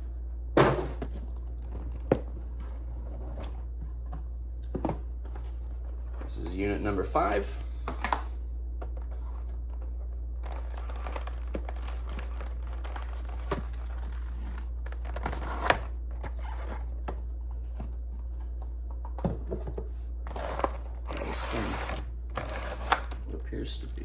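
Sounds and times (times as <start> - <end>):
plastic and paper crinkling: 9.0 - 16.8, 20.2 - 24.0.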